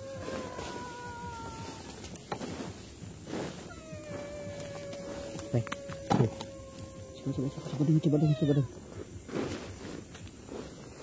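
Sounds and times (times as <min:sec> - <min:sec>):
cat-like wailing cry: 0:00.0 - 0:02.0, 0:03.7 - 0:08.8.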